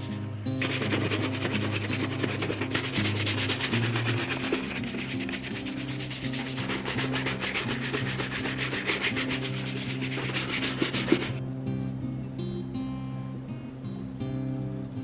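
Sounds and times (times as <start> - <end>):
hand rubbing on a boot: 0.0 - 11.4
background music: 0.0 - 15.0.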